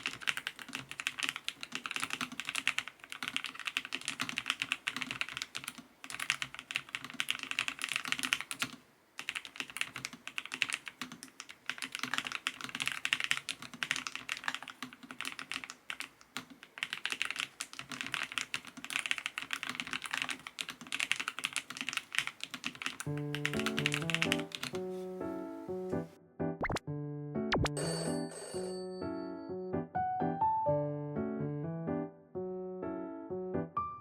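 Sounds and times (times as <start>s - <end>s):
fast typing on mechanical keyboard: 0.0s - 24.8s.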